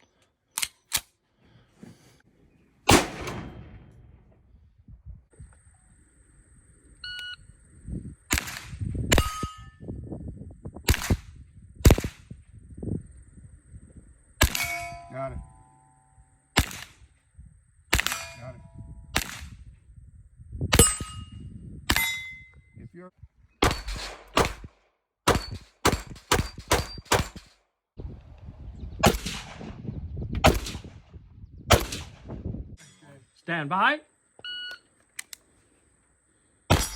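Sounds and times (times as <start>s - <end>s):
single gunshots: 2.9s - 4.3s, 8.3s - 9.4s, 16.6s - 17.0s, 19.2s - 19.6s, 23.6s - 27.5s, 29.0s - 29.8s, 30.4s - 30.9s, 31.7s - 32.3s.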